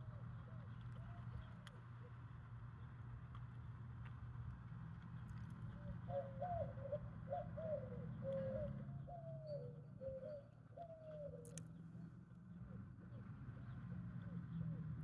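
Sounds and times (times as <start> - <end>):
dove cooing: 6.0 - 11.4.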